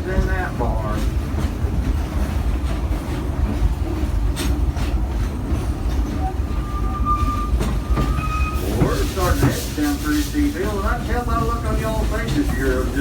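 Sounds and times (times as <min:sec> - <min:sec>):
rail clicks: 0:00.0 - 0:13.0
train coaches rumbling on track: 0:00.0 - 0:13.0
faint thin squeal: 0:06.6 - 0:08.6.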